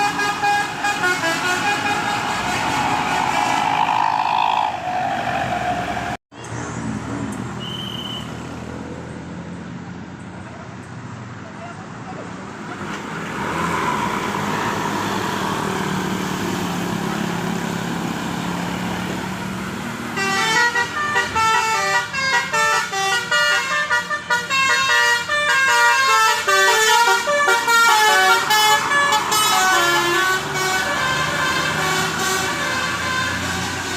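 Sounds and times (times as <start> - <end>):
bus musical horn melody: 0.0 - 6.2, 20.1 - 33.9
vehicle engine: 0.0 - 23.1, 25.4 - 33.9
road noise: 0.0 - 33.9.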